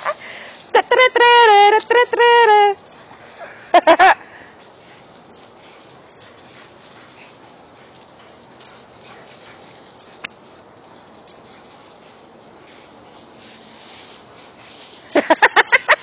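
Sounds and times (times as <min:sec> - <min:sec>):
paws pattering on dusty ground: 0:04.3 - 0:15.2.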